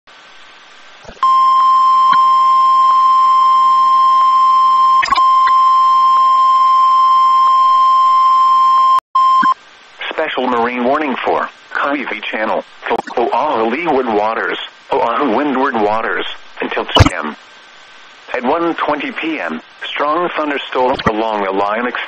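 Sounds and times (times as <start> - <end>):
faint radio hiss: 0.1 - 5.2, 9.6 - 22.0
long steady alarm beep: 1.2 - 9.6.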